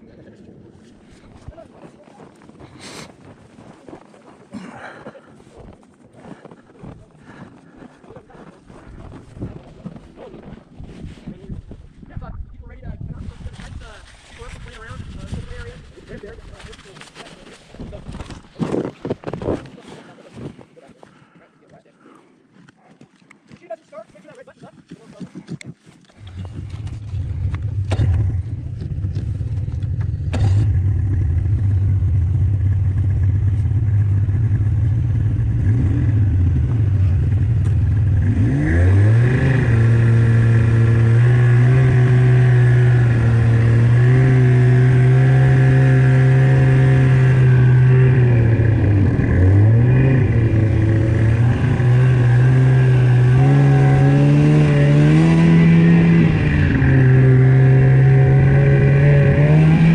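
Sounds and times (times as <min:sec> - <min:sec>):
snowmobile engine revving: 0:26.2 - 0:59.9.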